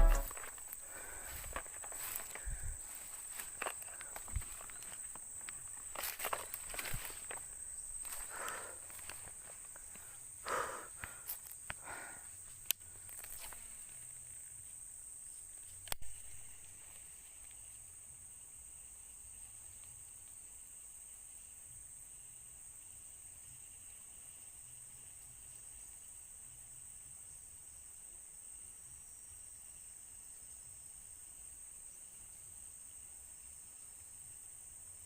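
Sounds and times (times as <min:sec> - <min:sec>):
footsteps through vegetation: 0:00.0 - 0:10.1, 0:13.0 - 0:14.2
insects droning: 0:00.0 - 0:35.0.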